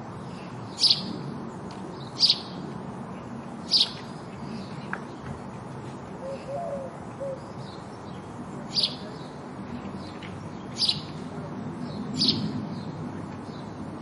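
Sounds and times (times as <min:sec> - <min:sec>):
sparrow chirping: 0:00.3 - 0:01.2, 0:01.9 - 0:02.6, 0:03.6 - 0:04.8, 0:06.3 - 0:09.4, 0:10.0 - 0:11.2, 0:11.8 - 0:13.8.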